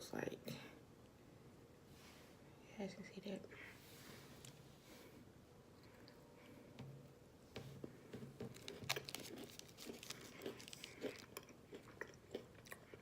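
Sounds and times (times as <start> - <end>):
person chewing crunchy chocolate: 8.5 - 13.0.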